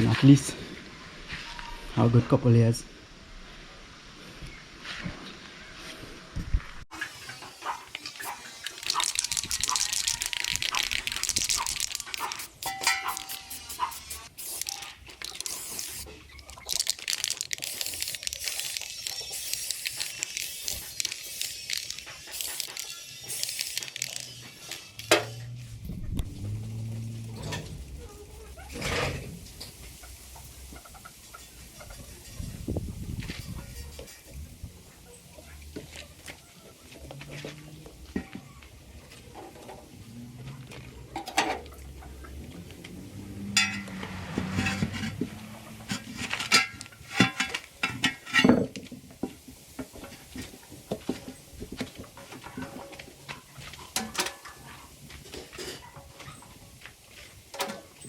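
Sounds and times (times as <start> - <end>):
metal tools clanking: 12.2 - 13.8, 43.5 - 48.7
ringing metallic clang: 12.7 - 13.6
low motor hum: 25.1 - 28.2
scrubbing on steel wheel rim: 43.4 - 48.3.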